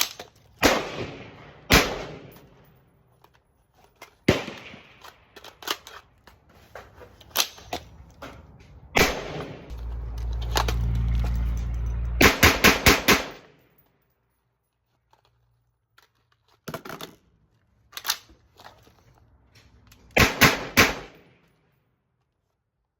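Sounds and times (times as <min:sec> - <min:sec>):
rifle shots: 0:00.0 - 0:02.6, 0:04.2 - 0:05.2, 0:09.0 - 0:09.7, 0:12.2 - 0:13.6, 0:20.2 - 0:21.3.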